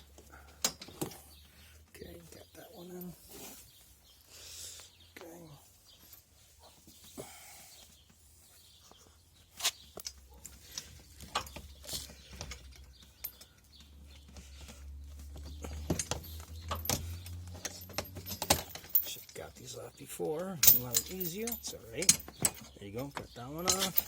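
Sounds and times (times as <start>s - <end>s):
metal hardware clicking and knocking: 0.1s - 1.2s, 10.0s - 14.4s, 15.3s - 19.7s, 20.4s - 24.0s.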